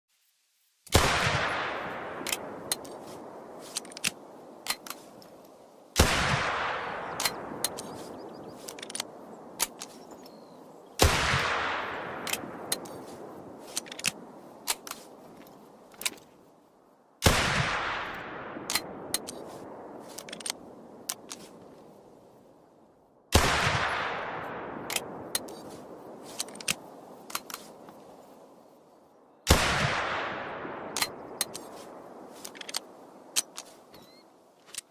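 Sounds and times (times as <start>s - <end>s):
pistol shots echoing: 0.9s - 4.3s, 6.0s - 8.1s, 11.0s - 13.2s, 17.2s - 19.4s, 23.3s - 25.5s, 29.5s - 32.3s.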